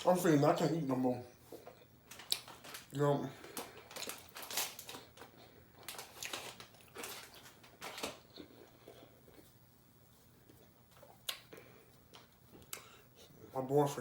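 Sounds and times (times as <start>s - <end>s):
crinkling crunching noises: 1.5s - 9.5s.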